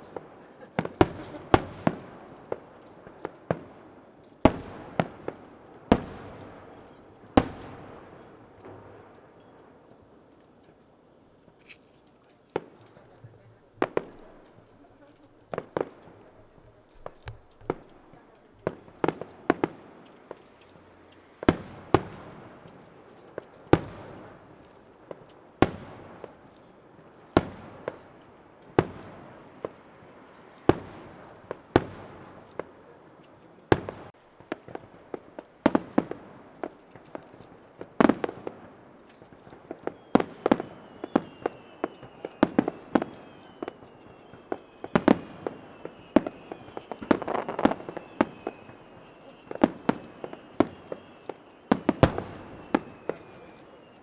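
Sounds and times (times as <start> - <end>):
firework shells bursting: 11.5 - 32.8, 33.7 - 53.8.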